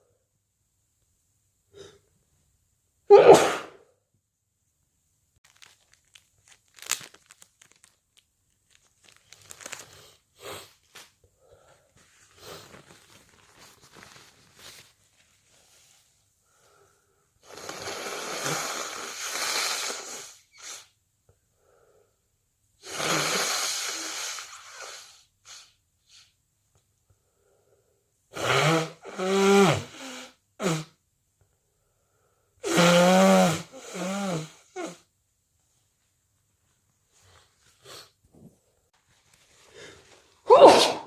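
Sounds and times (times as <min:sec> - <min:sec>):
loud voiced sneezes: 0:03.1 - 0:03.8, 0:40.4 - 0:41.0
person blowing nose: 0:03.1 - 0:03.8, 0:09.7 - 0:11.0, 0:12.2 - 0:14.8, 0:17.4 - 0:21.0, 0:22.8 - 0:26.4, 0:28.3 - 0:31.0, 0:32.6 - 0:35.1, 0:37.3 - 0:38.2, 0:39.7 - 0:41.0.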